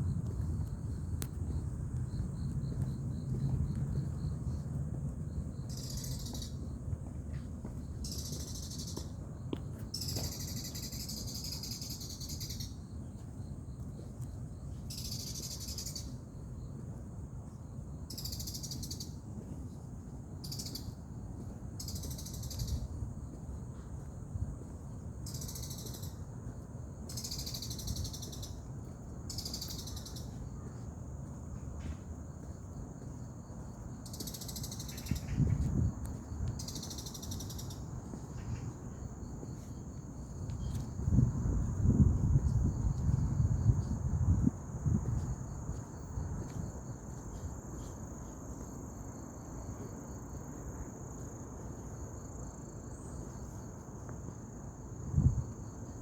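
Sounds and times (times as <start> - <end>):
low wind rumble: 0.0 - 10.0, 19.2 - 53.2, 54.6 - 56.0
high insect trill: 0.0 - 56.0
insects buzzing calls: 5.5 - 6.7, 7.8 - 9.2, 9.8 - 13.2, 14.9 - 16.7, 18.0 - 19.2, 20.4 - 21.0, 21.8 - 23.3, 25.2 - 31.1, 32.6 - 55.0.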